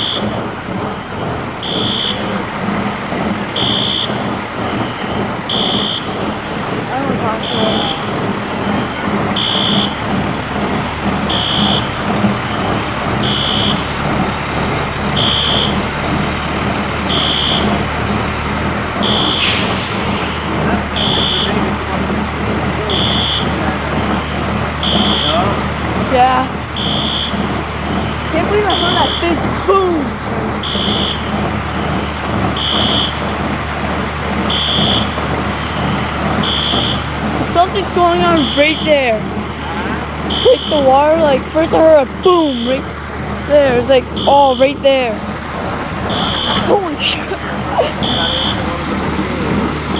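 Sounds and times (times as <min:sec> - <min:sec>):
fire alarm beeping: 0:00.0 - 0:00.5, 0:01.6 - 0:02.5, 0:03.6 - 0:06.4, 0:07.3 - 0:10.1, 0:11.2 - 0:14.0, 0:15.2 - 0:15.9, 0:17.1 - 0:17.8, 0:19.0 - 0:19.6, 0:21.0 - 0:21.7, 0:22.9 - 0:23.6, 0:24.8 - 0:25.4, 0:26.8 - 0:29.4, 0:30.6 - 0:33.2, 0:34.5 - 0:39.1, 0:40.3 - 0:42.9, 0:44.1 - 0:45.0, 0:46.1 - 0:47.2, 0:47.8 - 0:48.7
steady rushing noise: 0:00.0 - 0:49.9.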